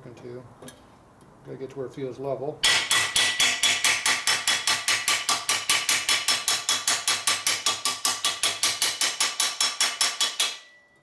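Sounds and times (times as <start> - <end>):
hammer tapping on metal pipe: 2.6 - 10.8.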